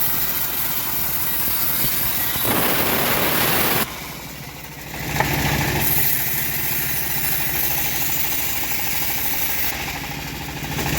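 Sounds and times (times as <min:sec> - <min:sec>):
bandsaw sawing: 0:00.0 - 0:04.0, 0:05.2 - 0:09.8
engine idling: 0:00.0 - 0:10.9.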